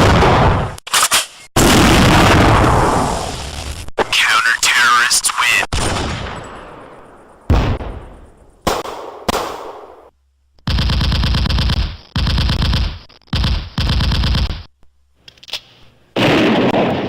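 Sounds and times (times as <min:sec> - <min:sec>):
single gunshots with echo: 0:07.5 - 0:10.1.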